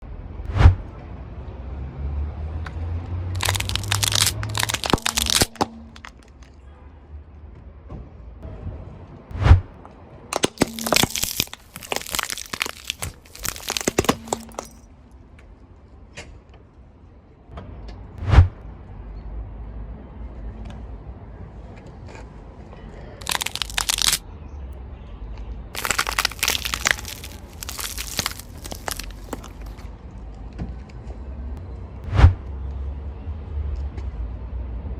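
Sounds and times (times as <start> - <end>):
tyre crushing brittle object: 3.4 - 6.4, 10.4 - 14.8, 23.2 - 24.2, 25.8 - 29.9.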